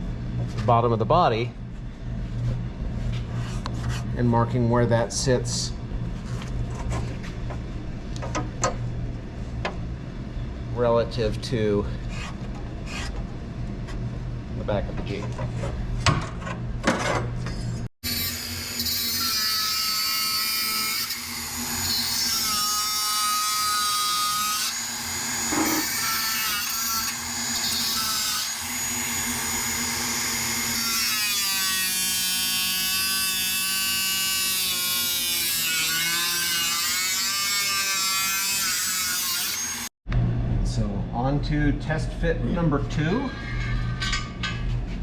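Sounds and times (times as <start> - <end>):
power tool cutting metal: 18.0 - 39.9.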